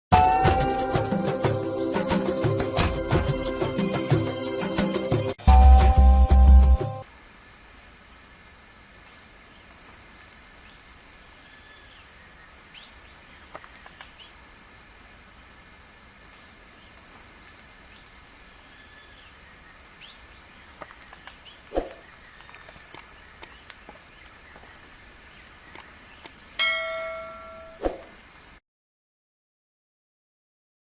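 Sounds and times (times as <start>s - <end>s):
distant bird calls: 9.2s - 28.6s
bell-like ring: 26.6s - 27.8s.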